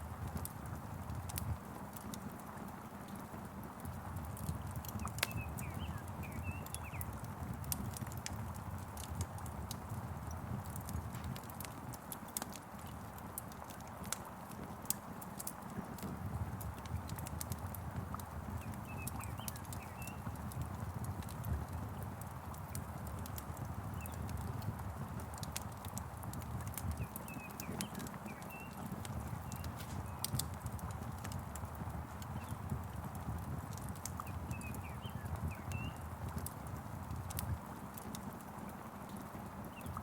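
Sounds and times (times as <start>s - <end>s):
wood fire crackling: 0.0s - 40.0s
bird chirps: 5.2s - 7.1s, 18.8s - 20.2s, 27.0s - 30.3s, 34.2s - 36.0s.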